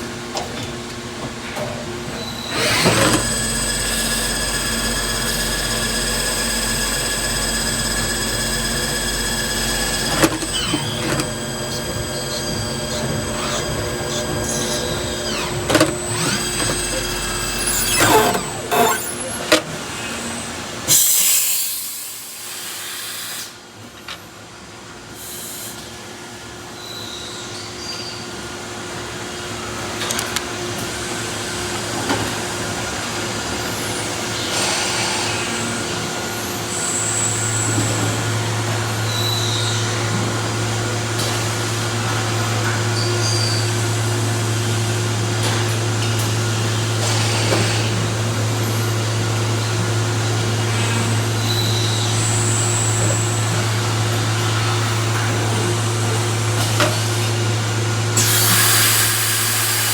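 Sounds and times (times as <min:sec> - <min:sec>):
cnc machine running: 0:02.0 - 0:20.9, 0:32.7 - 0:59.9.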